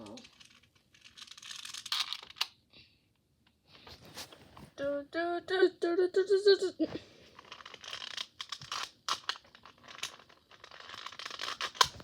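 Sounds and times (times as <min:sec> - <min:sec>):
plastic puzzle cube clicking: 0:00.0 - 0:02.6, 0:07.4 - 0:12.0.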